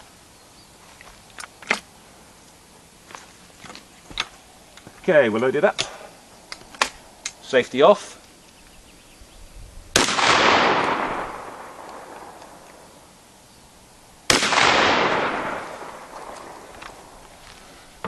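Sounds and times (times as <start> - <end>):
shotgun shots with echo: 10.0 - 12.6, 14.3 - 17.1.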